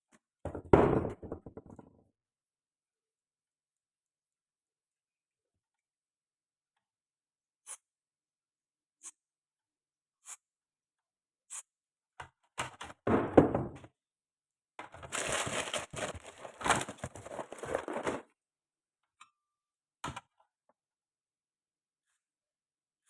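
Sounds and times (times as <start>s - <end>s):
scraping and rustling: 15.0s - 18.3s.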